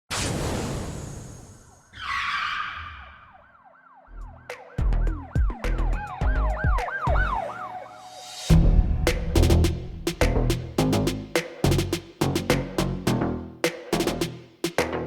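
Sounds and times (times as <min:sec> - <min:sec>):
siren-like tone rising and falling: 0:01.2 - 0:08.8
heavy bass beat: 0:04.6 - 0:07.4, 0:08.5 - 0:15.0
whoosh: 0:07.9 - 0:10.8.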